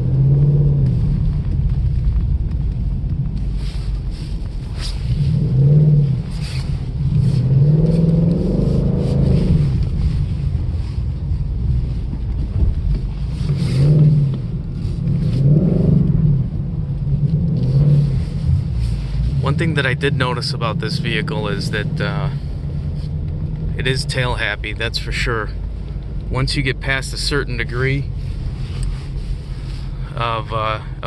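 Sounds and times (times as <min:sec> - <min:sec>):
car engine revving: 0:00.0 - 0:31.0.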